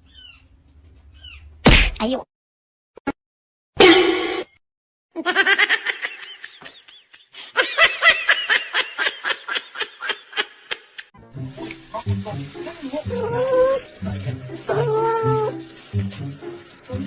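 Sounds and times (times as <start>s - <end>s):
person laughing hard: 5.2s - 11.1s.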